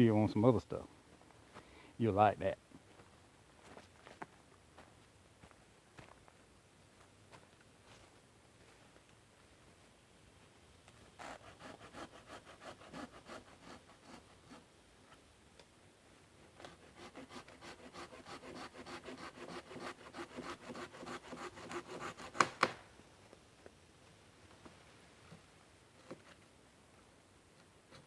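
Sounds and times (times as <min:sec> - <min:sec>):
hand saw cutting wood: 0:11.2 - 0:14.7, 0:16.6 - 0:22.8.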